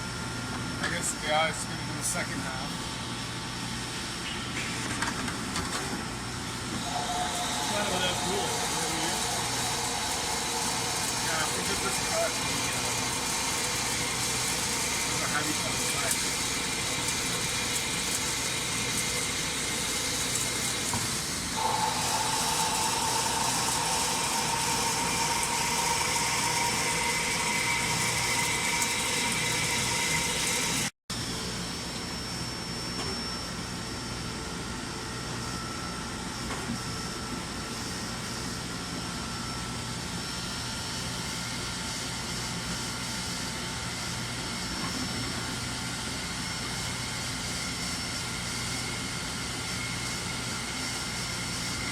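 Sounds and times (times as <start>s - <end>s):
lathe machining with whining tones: 6.6s - 30.9s.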